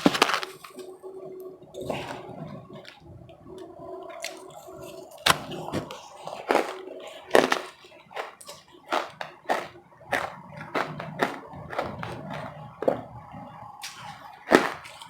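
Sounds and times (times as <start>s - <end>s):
ice crunching in mouth: 0.0s - 1.0s, 4.2s - 13.1s, 13.8s - 15.0s
wet mouth sounds: 4.2s - 13.1s.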